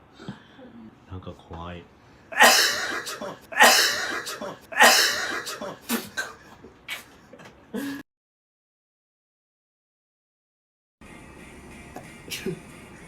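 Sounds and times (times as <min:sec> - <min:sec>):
person sneezing loudly: 0:02.3 - 0:06.4.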